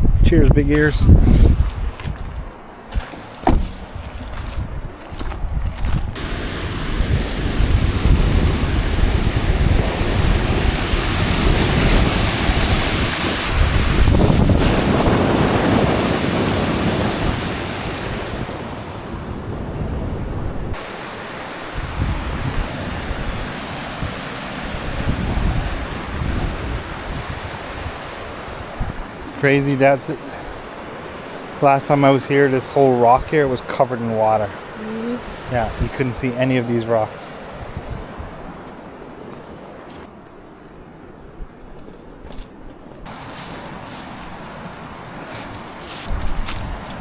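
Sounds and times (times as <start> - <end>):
wind buffeting microphone: 0.0 - 21.0, 21.7 - 31.4, 34.8 - 36.1, 37.5 - 39.2, 42.9 - 47.0
river waterfall roar: 6.2 - 18.9.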